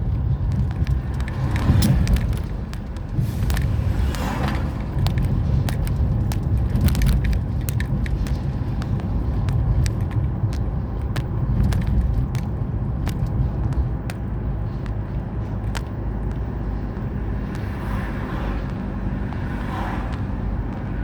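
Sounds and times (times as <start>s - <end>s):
car engine and tyre rumble: 0.0s - 21.0s.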